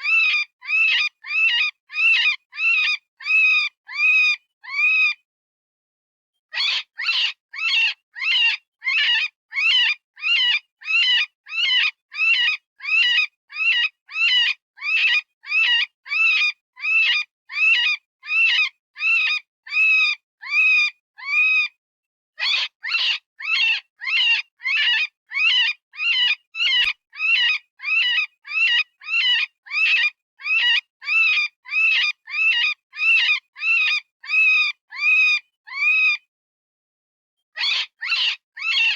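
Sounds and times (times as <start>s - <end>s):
rabbit distress cries: 6.6s - 11.2s, 22.4s - 36.2s, 37.6s - 38.9s.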